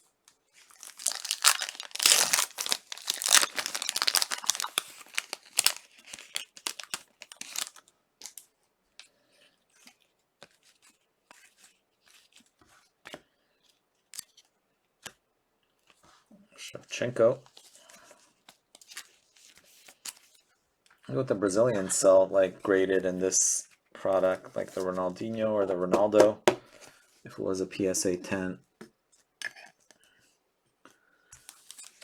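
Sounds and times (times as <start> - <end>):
cards rustling and clicking: 0.3 - 15.2, 17.5 - 21.0
wrapper crinkling tear: 0.6 - 8.4.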